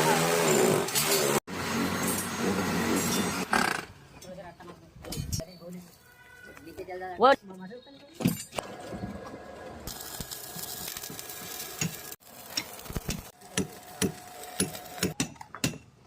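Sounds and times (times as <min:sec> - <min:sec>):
welding arc crackling: 0:09.8 - 0:15.2
sharp pops and clicks: 0:10.2 - 0:13.3.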